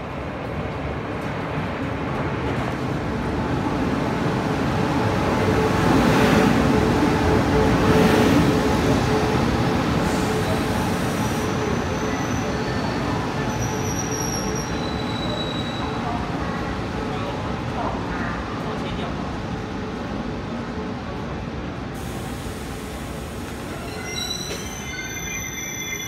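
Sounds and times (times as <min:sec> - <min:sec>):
thin high squeals: 0:23.7 - 0:26.0.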